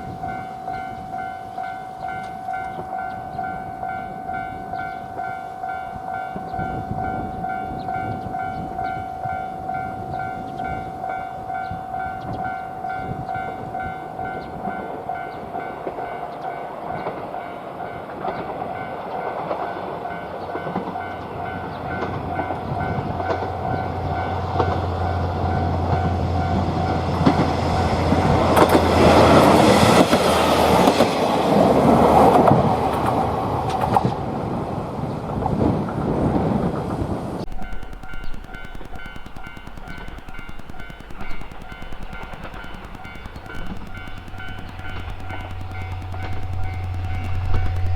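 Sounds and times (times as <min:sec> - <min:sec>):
diesel railcar engine hum: 0:00.0 - 0:47.9.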